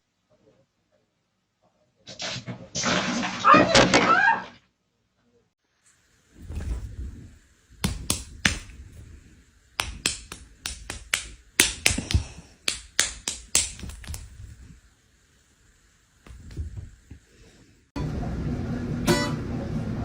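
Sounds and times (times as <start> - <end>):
sharp taps: 9.8 - 14.3.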